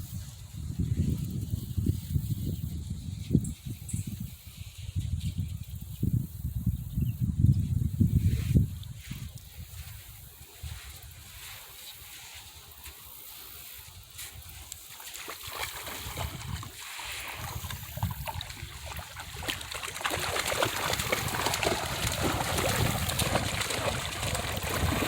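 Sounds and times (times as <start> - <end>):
creek water splashing: 13.8 - 25.0.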